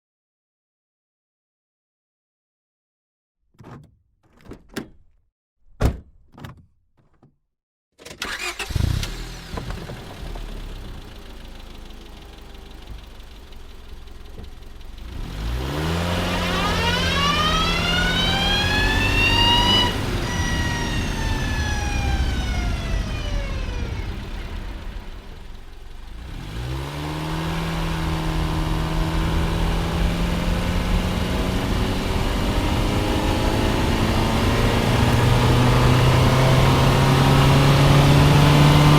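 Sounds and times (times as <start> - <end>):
knocks: 3.6 - 5.1
car engine starting and revving: 8.2 - 38.9.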